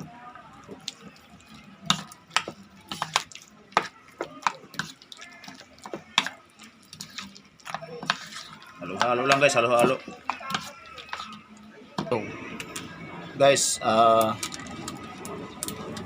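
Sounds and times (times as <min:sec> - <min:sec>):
wet squishing by hand: 0:00.7 - 0:11.7.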